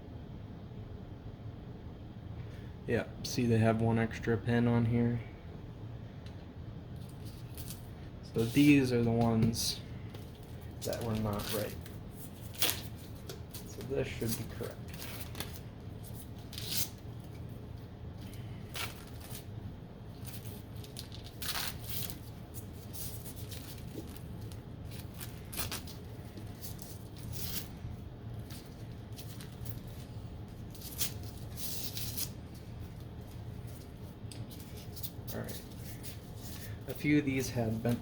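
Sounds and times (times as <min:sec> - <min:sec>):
plastic package rustling: 0:10.1 - 0:17.5, 0:18.2 - 0:38.0.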